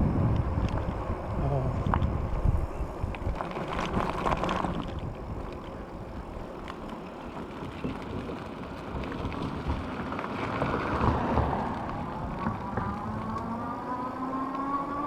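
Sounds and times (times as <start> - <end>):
wind over microphone: 0.0 - 6.6
bike tires rolling on pavement: 0.0 - 15.0.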